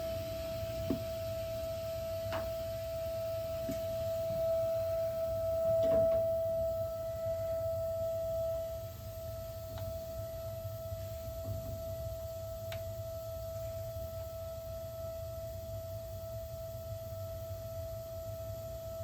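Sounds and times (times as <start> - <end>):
gas water heater whining: 0.0 - 19.0.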